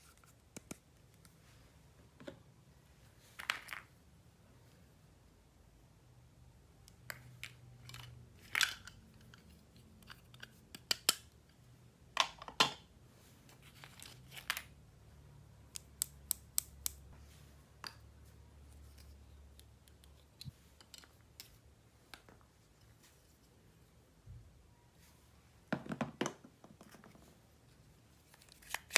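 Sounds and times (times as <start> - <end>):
plastic toy pieces tapping and clicking: 6.9 - 11.3.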